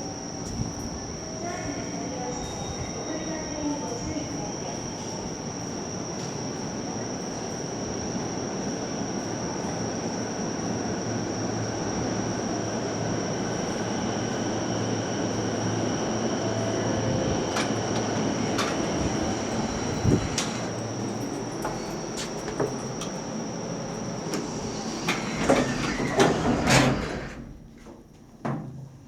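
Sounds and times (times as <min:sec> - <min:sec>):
elevator pump motor hum and hiss: 0:07.3 - 0:28.0
thin high whine: 0:15.5 - 0:27.7.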